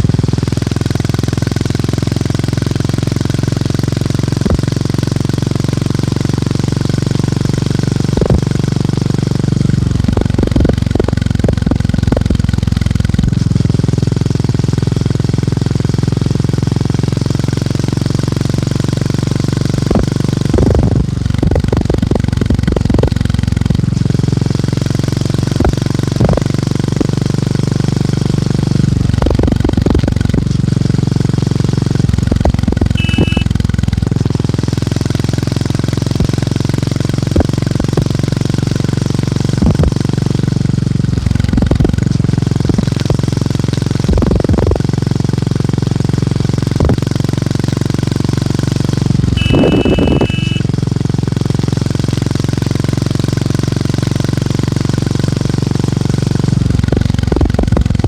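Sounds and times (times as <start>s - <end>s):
short high beep: 33.0s - 33.6s, 49.4s - 50.8s.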